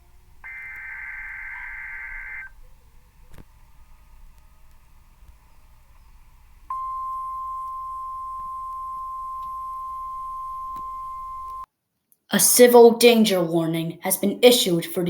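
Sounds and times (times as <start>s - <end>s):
faint hiss: 0.0s - 11.4s.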